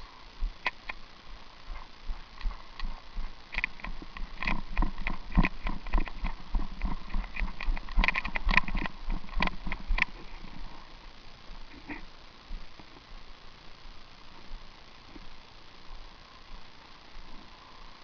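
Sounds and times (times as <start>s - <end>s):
sharp clicks and knocks: 2.4s - 10.6s.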